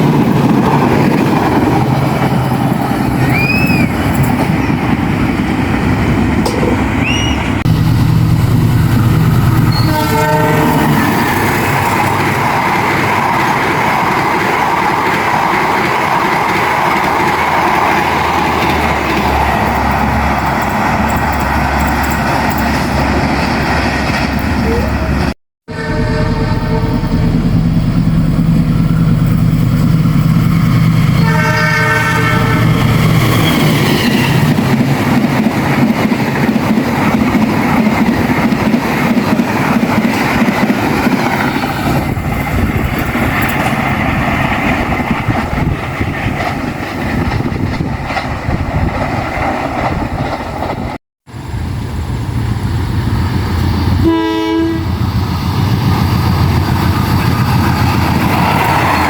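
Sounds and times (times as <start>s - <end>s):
train rumbling and clattering: 0.0s - 59.0s
locomotive engine droning: 6.4s - 12.6s, 17.0s - 33.5s
train horn: 9.7s - 11.0s, 25.7s - 27.2s, 31.1s - 32.8s, 54.0s - 55.0s.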